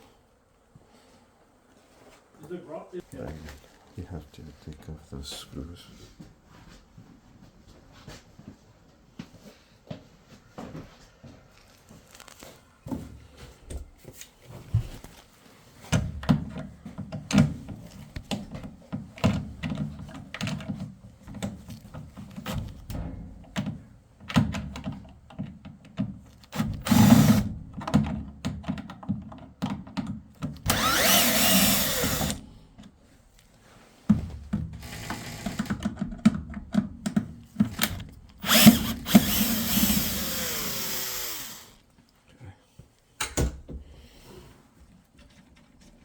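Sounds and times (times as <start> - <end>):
power screwdriver whirring: 26.6 - 27.5, 30.6 - 32.4, 34.8 - 35.7, 37.7 - 41.8
clicks and knocks of parts: 34.5 - 41.1.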